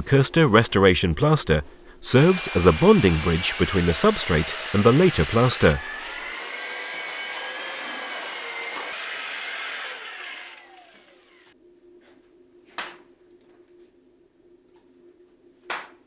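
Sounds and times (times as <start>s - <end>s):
faint hum: 0.0s - 6.3s, 10.6s - 16.0s
power tool motor running: 2.1s - 11.6s.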